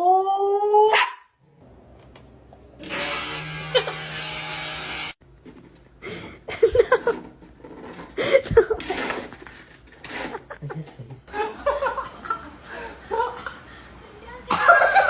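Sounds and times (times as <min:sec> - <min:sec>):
person laughing: 0:06.0 - 0:07.3, 0:08.2 - 0:09.0, 0:10.1 - 0:13.6.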